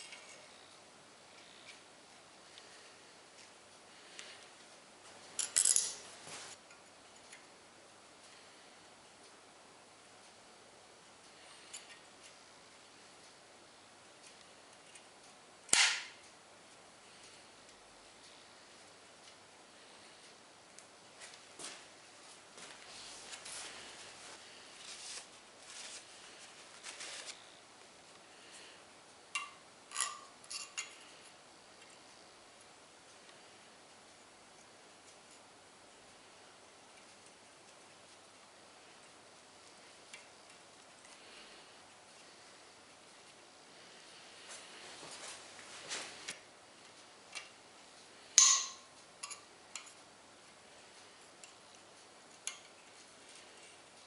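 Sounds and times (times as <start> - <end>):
metal tools clinking: 5.4 - 6.1
rustling scrape: 6.0 - 6.6, 22.6 - 27.4, 44.3 - 46.3
sharp metallic clinks: 48.4 - 48.8.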